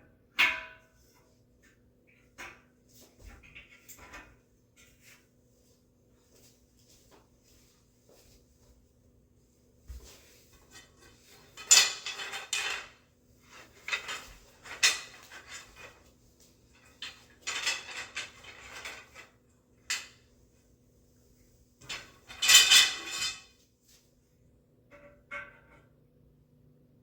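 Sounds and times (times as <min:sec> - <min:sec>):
metal bed frame parts clanking: 0:10.0 - 0:16.1, 0:16.7 - 0:20.2, 0:21.8 - 0:23.6.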